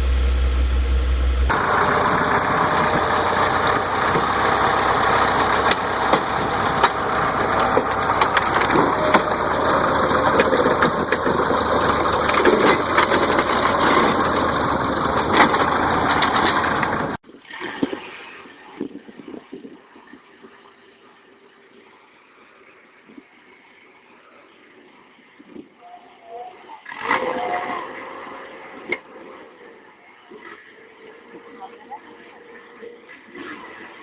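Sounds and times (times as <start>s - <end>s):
engine running: 0.0s - 17.2s.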